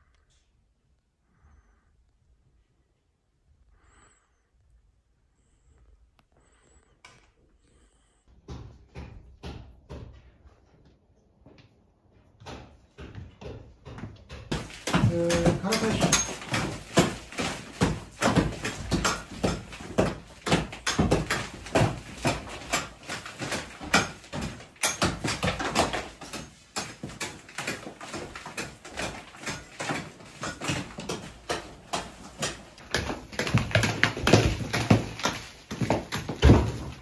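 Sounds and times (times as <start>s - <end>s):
rapid knocking and tapping: 8.4s - 10.3s, 12.4s - 37.0s.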